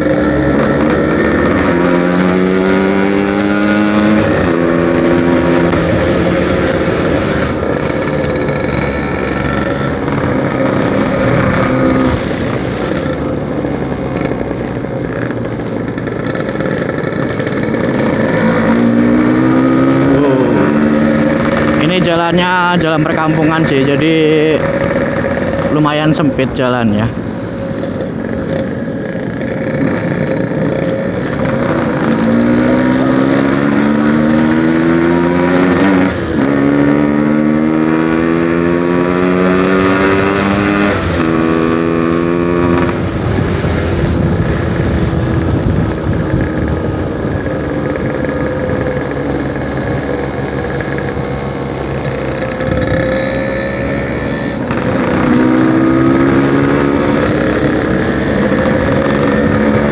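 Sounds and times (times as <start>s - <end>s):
two-stroke motorcycle revving: 0.0s - 59.9s.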